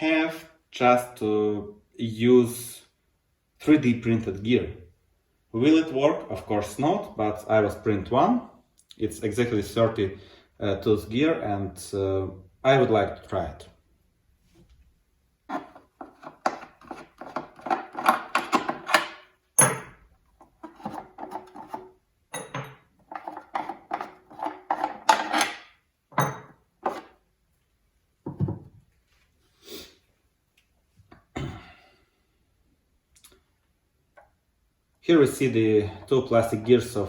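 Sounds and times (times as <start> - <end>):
hard parts clicking and clattering: 15.5 - 27.1.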